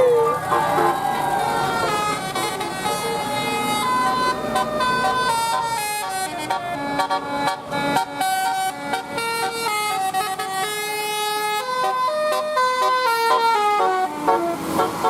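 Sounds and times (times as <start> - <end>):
bus horn playing a tune: 0.1 - 15.0.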